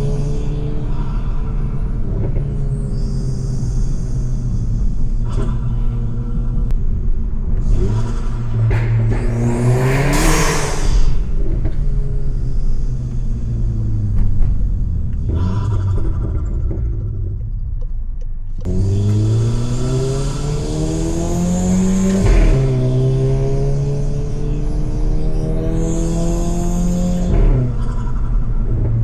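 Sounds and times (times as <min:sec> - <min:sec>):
car engine and exhaust revving: 0:00.0 - 0:29.0
loud rushing burst: 0:07.6 - 0:12.4.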